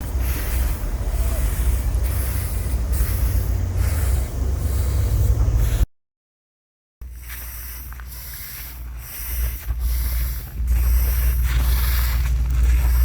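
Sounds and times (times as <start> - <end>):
rice grains swishing on ground: 0.0 - 5.8, 7.0 - 13.0
wind rumble on microphone: 8.5 - 13.0.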